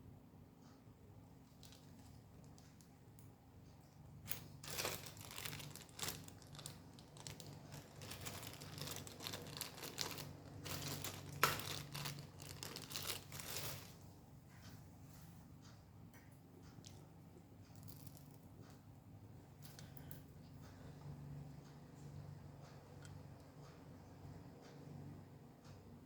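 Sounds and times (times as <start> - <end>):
packaging crinkling: 4.3 - 14.0.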